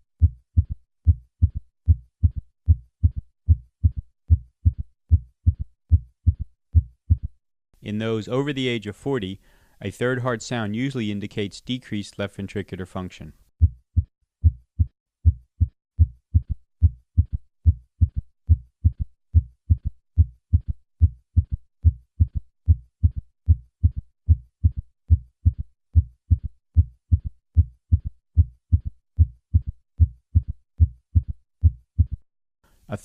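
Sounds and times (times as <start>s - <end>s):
heartbeat thuds: 0.2s - 7.4s, 13.6s - 32.2s.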